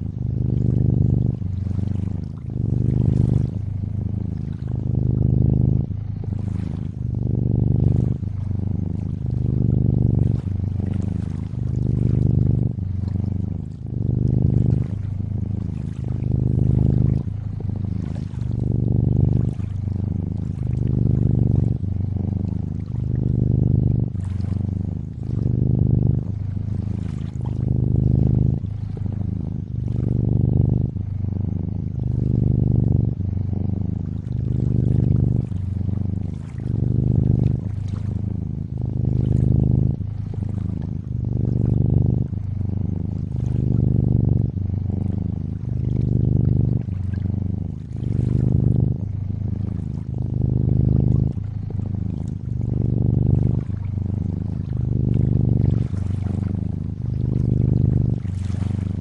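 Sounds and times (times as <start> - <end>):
cat purring: 0.0 - 59.0.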